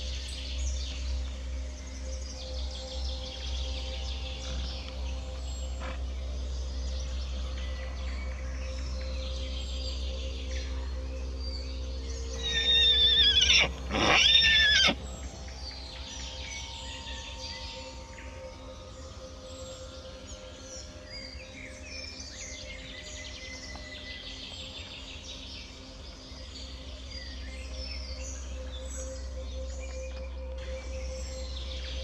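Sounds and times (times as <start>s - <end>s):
small birds chirping: 11.5s - 18.1s
pony neighing: 12.4s - 15.0s.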